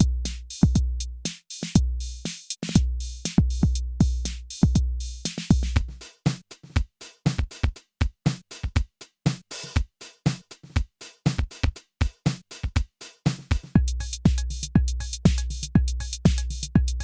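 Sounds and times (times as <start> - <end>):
hi-hat ticks: 0.0 - 8.8, 9.7 - 17.0
drum machine kicks: 2.6 - 6.0, 10.8 - 17.0.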